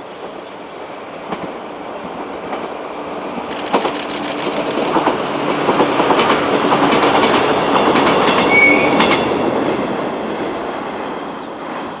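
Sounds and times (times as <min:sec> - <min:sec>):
train wheels clicking over rail joints: 0:03.5 - 0:09.2.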